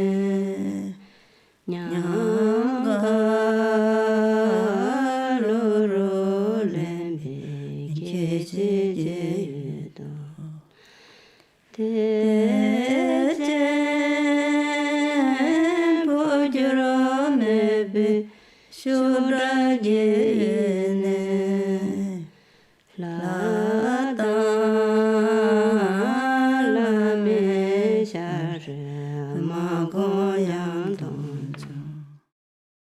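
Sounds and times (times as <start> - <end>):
short breaths: 1.0 - 1.6, 10.7 - 11.7, 18.3 - 18.8, 22.3 - 22.9
person chanting: 1.7 - 10.7, 11.8 - 32.3.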